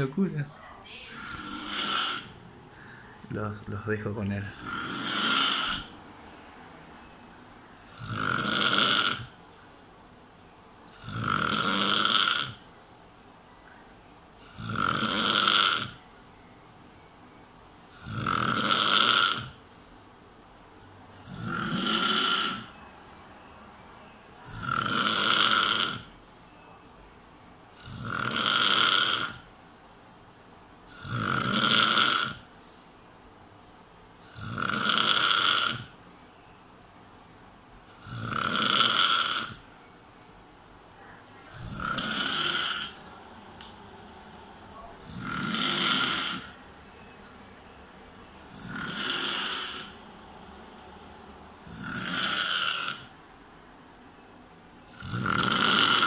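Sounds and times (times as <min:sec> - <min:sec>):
man snoring: 0:01.2 - 0:02.4, 0:03.4 - 0:05.9, 0:07.8 - 0:09.4, 0:10.9 - 0:12.7, 0:14.4 - 0:16.0, 0:17.9 - 0:19.6, 0:21.1 - 0:22.7, 0:24.4 - 0:26.1, 0:27.7 - 0:29.5, 0:30.9 - 0:32.5, 0:34.2 - 0:36.0, 0:37.9 - 0:39.7, 0:41.5 - 0:43.0, 0:45.0 - 0:46.6, 0:48.4 - 0:50.1, 0:51.5 - 0:53.2, 0:54.9 - 0:56.0.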